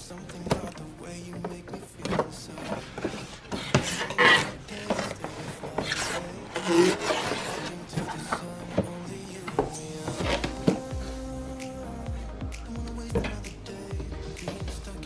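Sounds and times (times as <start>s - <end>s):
objects scraping and rubbing: 1.8s - 10.9s.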